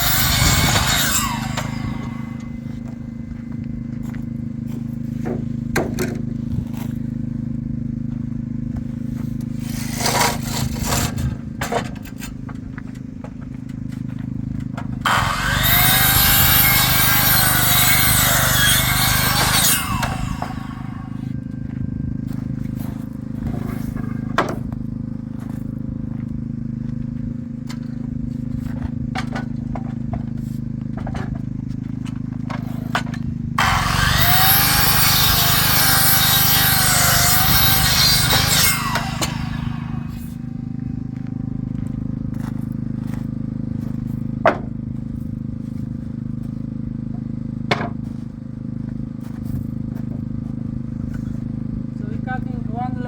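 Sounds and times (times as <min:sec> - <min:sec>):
knocks and scrapes: 0:09.0 - 0:20.8, 0:22.3 - 0:24.8, 0:27.7 - 0:40.3
scraping: 0:09.2 - 0:24.7
machine motor running: 0:12.3 - 0:52.0
engine idling: 0:39.8 - 0:53.0.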